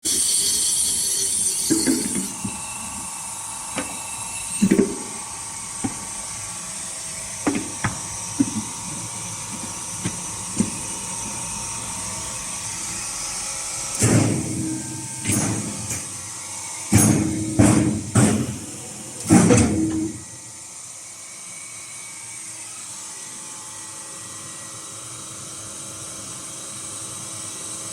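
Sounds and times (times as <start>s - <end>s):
welding machine humming: 0.1s - 21.2s
sharp clicks and knocks: 7.4s - 11.4s
machine parts clunking and rattling: 15.2s - 16.2s, 16.9s - 20.2s.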